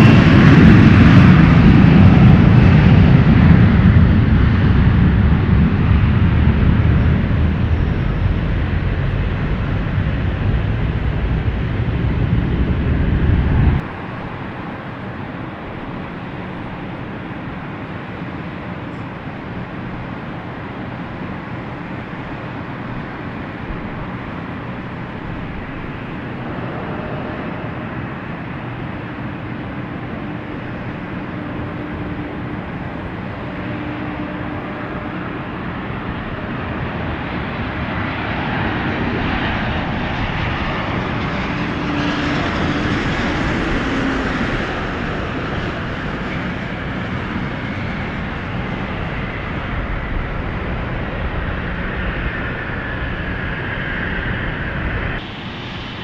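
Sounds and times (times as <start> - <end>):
airliner engines roaring overhead: 0.0 - 56.0.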